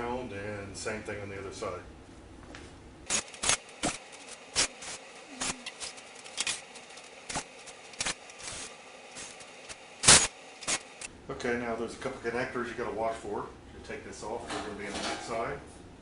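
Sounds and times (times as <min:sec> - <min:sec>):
tools and bolts clicking: 0:03.1 - 0:08.4.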